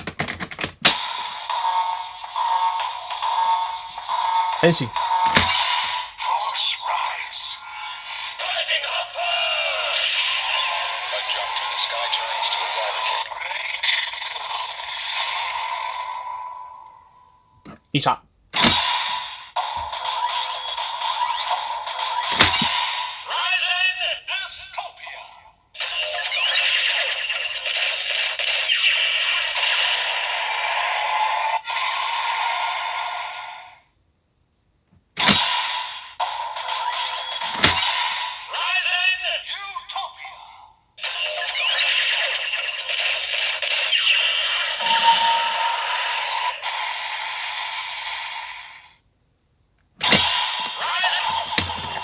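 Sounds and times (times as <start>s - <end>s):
tinny toy speaker music: 1.0s - 16.5s, 35.3s - 49.0s
synthesised announcer voice: 4.6s - 5.0s
toy electronic sound effects: 25.8s - 30.3s, 41.0s - 48.4s
toy speaker music: 41.0s - 48.6s.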